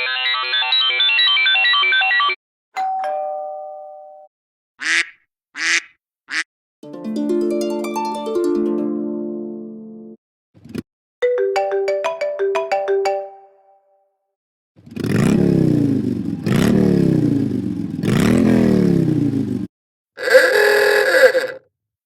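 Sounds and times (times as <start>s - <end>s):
phone alarm tones: 0.0s - 2.4s, 20.2s - 21.6s
plucked-note melody: 6.8s - 10.2s.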